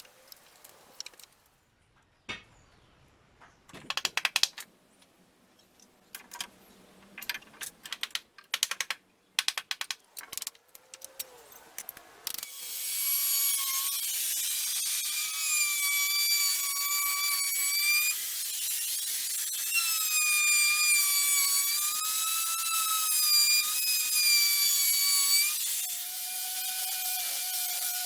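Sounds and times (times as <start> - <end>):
sharp clicks and taps: 3.7 - 5.1, 7.2 - 12.4.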